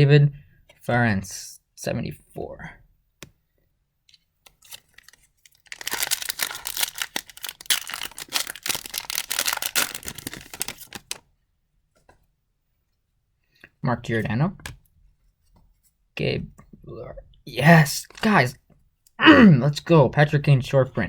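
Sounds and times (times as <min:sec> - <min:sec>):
wrapper tearing and crinkling: 0:04.6 - 0:11.2.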